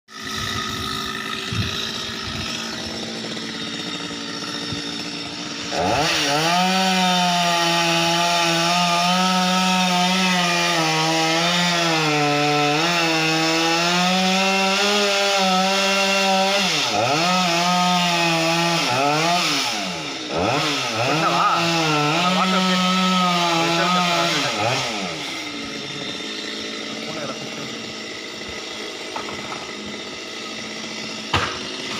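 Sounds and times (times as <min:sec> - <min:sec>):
chainsaw revving: 0:00.1 - 0:31.9.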